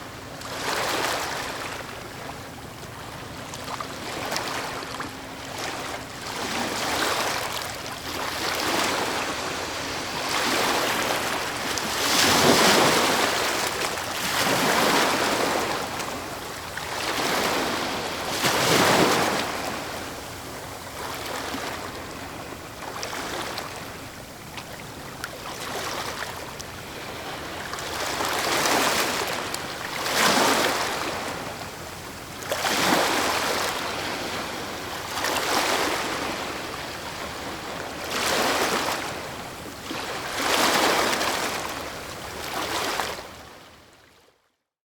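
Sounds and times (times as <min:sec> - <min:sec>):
ocean waves crashing: 0:05.8 - 0:16.3, 0:16.9 - 0:20.1.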